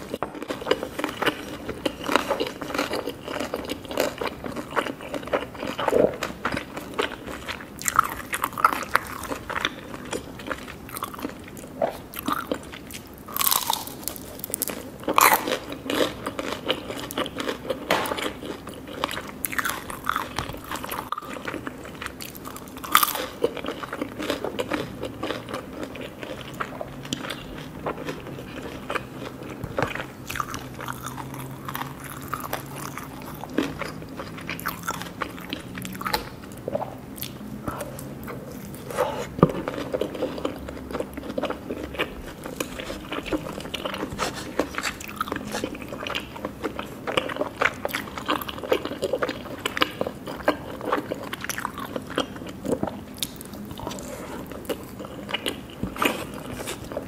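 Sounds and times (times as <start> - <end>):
faint low hum: 0.0 - 57.0
person chewing crunchy food: 0.0 - 57.0.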